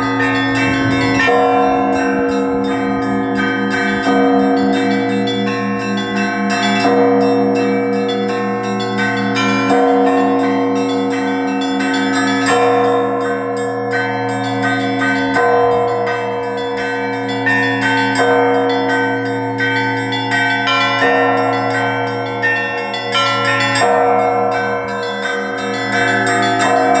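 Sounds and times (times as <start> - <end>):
large bass bell striking: 0.0 - 27.0
small treble bells ringing: 0.0 - 27.0.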